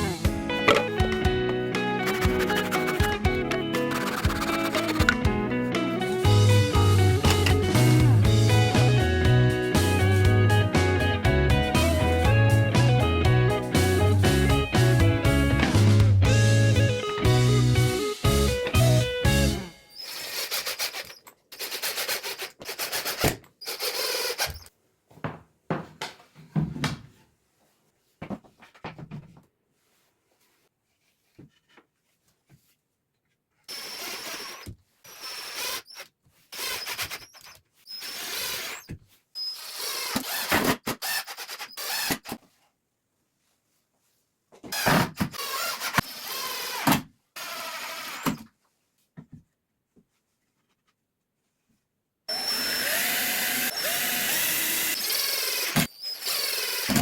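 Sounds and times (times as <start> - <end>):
power tool working wood: 2.0 - 5.3, 52.3 - 57.0.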